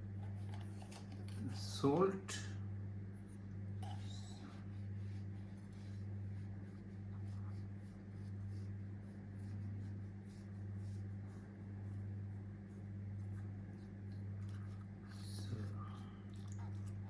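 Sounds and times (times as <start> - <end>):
pulsing electrical hum: 0.0 - 17.0.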